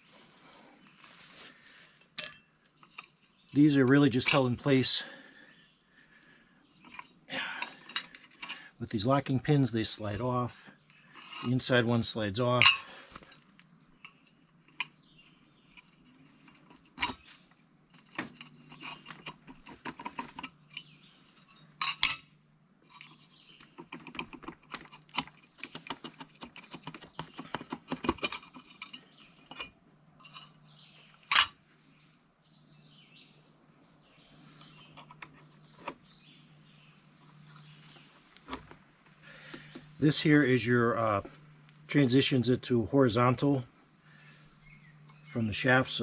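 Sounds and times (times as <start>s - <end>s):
metal tines clinking and clattering: 1.9s - 5.0s, 6.7s - 31.6s.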